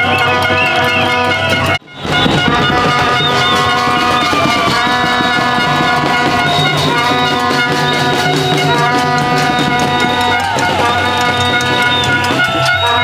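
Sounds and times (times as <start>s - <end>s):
horn noisemakers blaring: 0.0s - 13.0s
rapid clatter: 0.0s - 13.0s.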